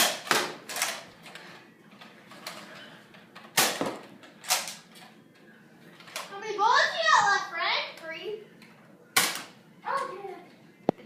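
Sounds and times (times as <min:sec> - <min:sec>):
toy dart blaster firing: 0:09.2 - 0:09.5.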